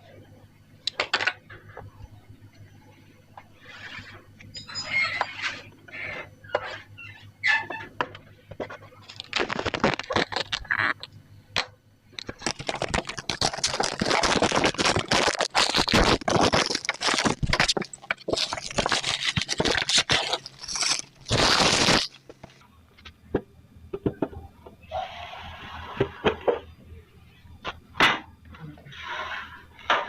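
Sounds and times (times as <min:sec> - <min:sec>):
packaging rustling and scraping: 0:08.6 - 0:11.0, 0:12.2 - 0:22.6.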